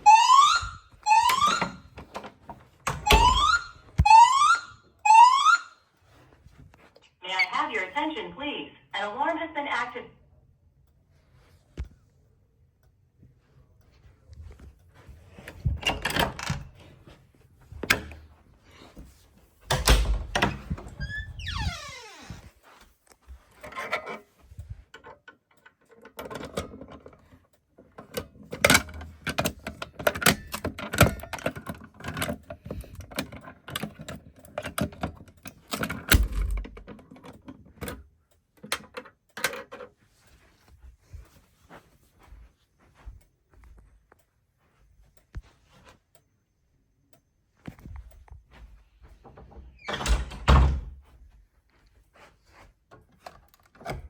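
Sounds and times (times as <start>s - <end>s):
knocks clicks and rattles: 14.5s - 17.1s, 19.7s - 22.5s, 23.3s - 40.0s.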